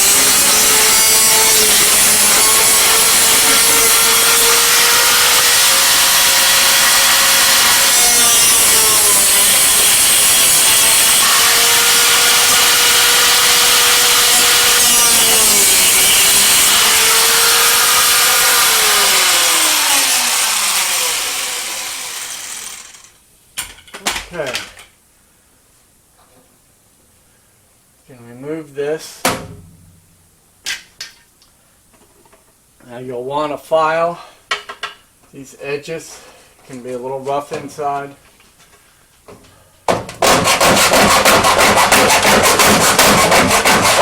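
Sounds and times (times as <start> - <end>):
power tool cutting sheet metal: 0.0 - 23.2, 40.2 - 44.0.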